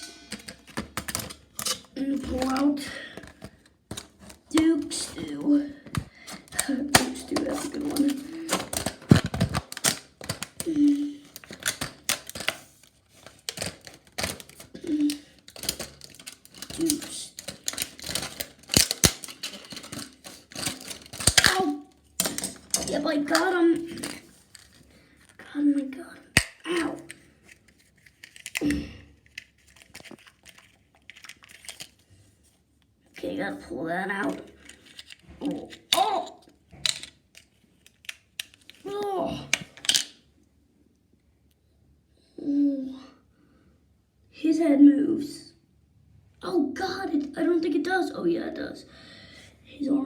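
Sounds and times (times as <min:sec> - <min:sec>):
plastic packaging being opened: 0:00.0 - 0:25.4, 0:26.3 - 0:32.3, 0:34.2 - 0:40.2.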